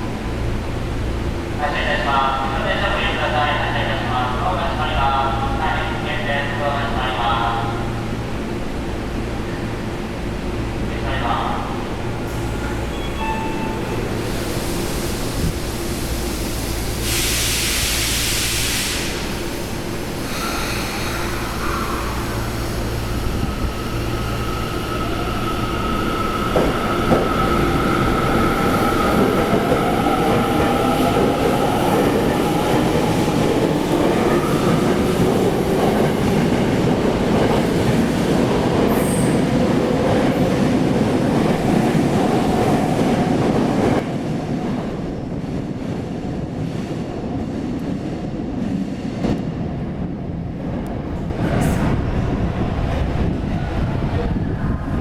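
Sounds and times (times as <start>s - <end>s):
subway train motors whining: 0.0s - 55.0s.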